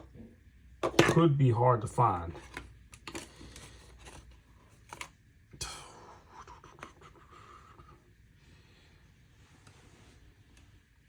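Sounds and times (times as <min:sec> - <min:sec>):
faint scraping and rubbing: 0:09.4 - 0:10.5.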